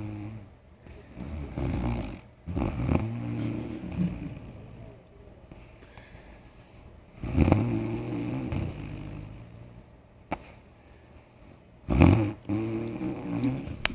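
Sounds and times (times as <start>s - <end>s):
man snoring: 0.0s - 5.0s, 7.2s - 9.8s, 11.9s - 13.9s.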